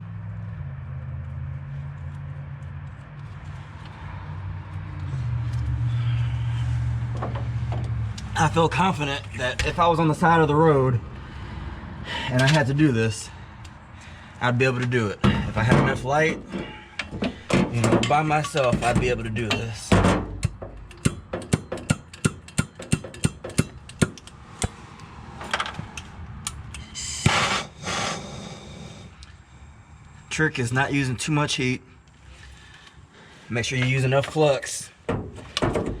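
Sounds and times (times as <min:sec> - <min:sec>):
engine humming steadily: 0:00.0 - 0:36.0
sharp clicks and taps: 0:18.6 - 0:26.8.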